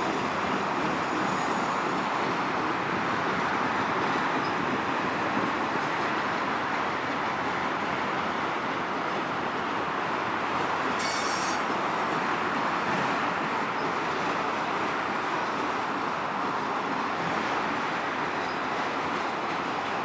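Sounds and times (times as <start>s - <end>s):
freight train rolling on rails: 0.0s - 20.0s
brief high hiss: 11.0s - 11.8s.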